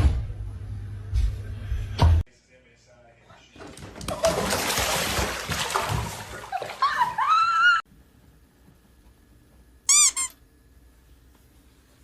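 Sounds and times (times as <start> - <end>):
water splashing and sloshing: 3.6 - 7.3
short high cries: 9.9 - 10.4.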